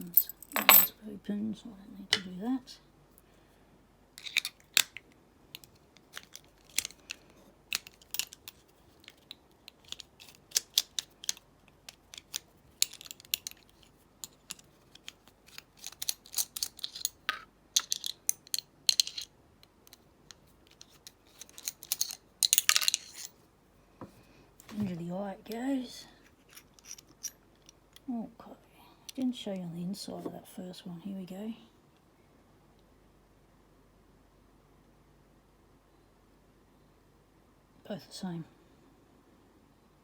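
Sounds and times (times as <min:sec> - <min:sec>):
metal padlock parts clicking: 0:00.0 - 0:00.9, 0:05.6 - 0:23.4, 0:26.5 - 0:28.0.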